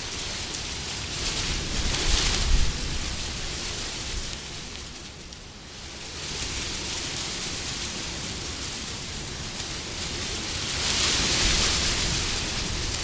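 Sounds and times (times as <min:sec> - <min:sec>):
wind blowing in gusts: 0:00.0 - 0:04.7, 0:10.0 - 0:13.0.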